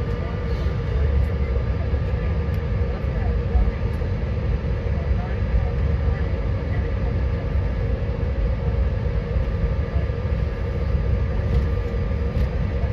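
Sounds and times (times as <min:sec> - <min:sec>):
airliner cabin rumble: 0:00.0 - 0:12.9.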